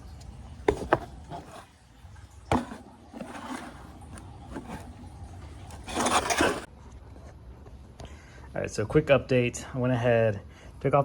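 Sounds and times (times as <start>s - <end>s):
scraping and rubbing: 0.2s - 1.8s, 2.4s - 6.7s.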